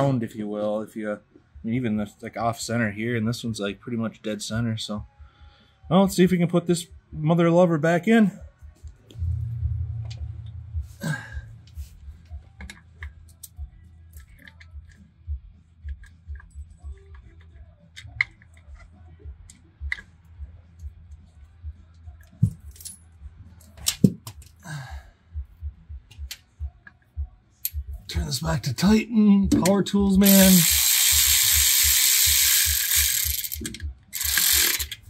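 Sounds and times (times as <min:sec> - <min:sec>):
metallic clicks and clinks: 0:22.2 - 0:23.0, 0:30.2 - 0:35.0.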